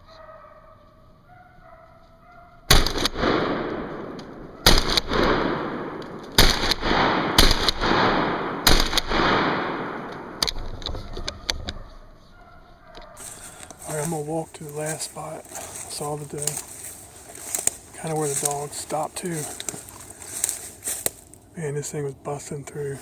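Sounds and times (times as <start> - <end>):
shotgun shots echoing: 2.7 - 10.7
faint animal calls: 10.8 - 14.5.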